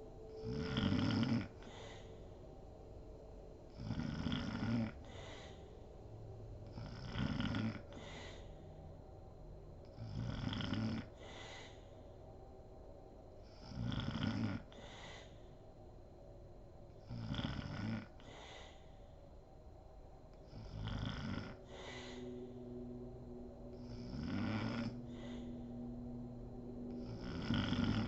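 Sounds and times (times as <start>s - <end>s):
woman snoring: 0.4s - 2.2s, 3.8s - 5.6s, 6.6s - 8.6s, 9.9s - 11.8s, 13.6s - 15.4s, 17.1s - 18.7s, 20.5s - 22.6s, 23.7s - 25.9s, 26.8s - 28.0s
breathy exhale: 1.4s - 2.4s, 5.0s - 5.9s, 7.8s - 8.8s, 11.2s - 12.2s, 14.7s - 15.6s, 18.2s - 19.2s, 20.4s - 28.0s.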